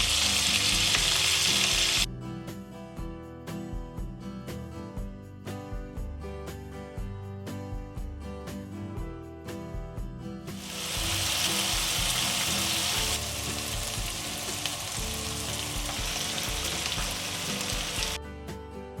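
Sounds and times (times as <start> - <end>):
food sizzling in hot oil: 0.0 - 2.1, 10.6 - 18.2.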